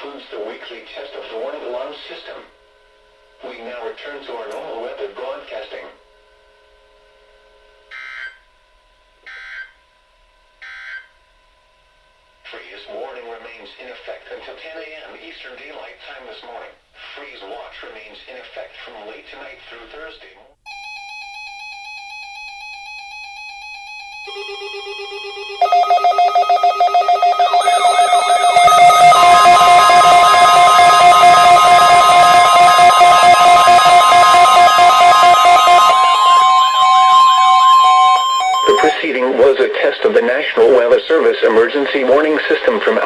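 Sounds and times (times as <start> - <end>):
faint steady hum with tones: 0.0 - 43.0
wavering synthesizer tone: 23.3 - 39.6
harsh digital data bursts: 24.3 - 39.1
lower synthesizer tone: 24.3 - 39.1
rapidly pulsing synthesizer: 24.3 - 39.6.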